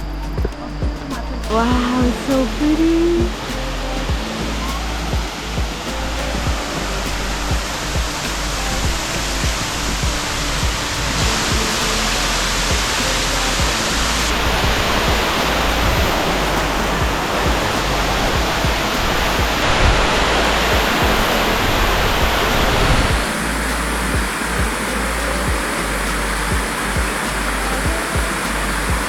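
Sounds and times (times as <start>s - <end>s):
waterfall rushing: 0.0s - 29.0s.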